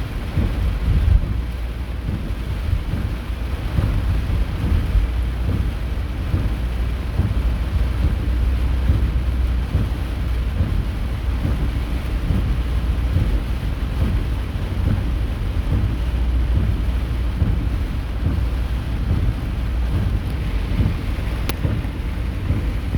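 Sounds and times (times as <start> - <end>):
rain and hail drumming on car roof: 0.0 - 22.9
steady low rumble: 0.0 - 22.9.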